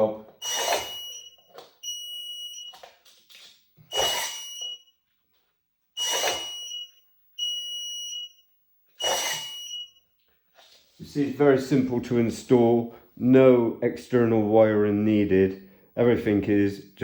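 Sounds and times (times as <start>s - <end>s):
high electronic beep: 0.4s - 2.8s, 3.9s - 4.9s, 6.0s - 8.4s, 9.0s - 10.0s
deadbolt whir and clunk: 0.5s - 1.8s, 6.0s - 6.8s.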